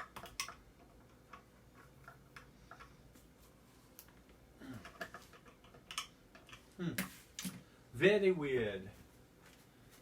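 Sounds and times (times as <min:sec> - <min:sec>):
metal parts clicking: 0:00.0 - 0:03.0.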